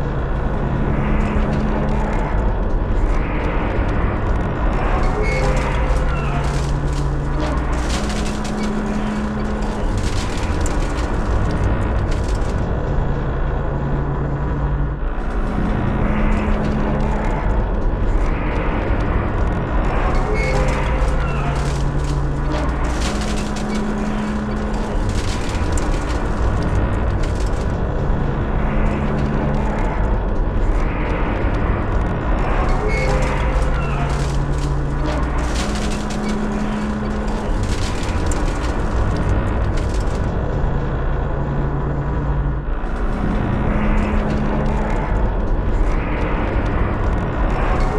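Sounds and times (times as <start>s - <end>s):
crane metal creaking and grinding: 0.0s - 47.9s
dense rumble: 0.0s - 47.9s
steady low hum: 0.0s - 47.9s.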